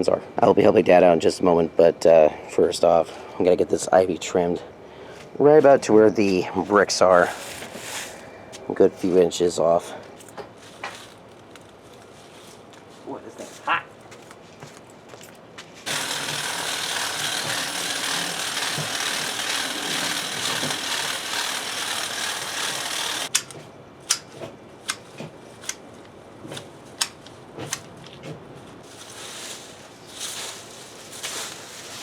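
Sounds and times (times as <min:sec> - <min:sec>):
hedge trimmer cutting: 0:15.9 - 0:23.4
sharp clicks: 0:15.9 - 0:24.3.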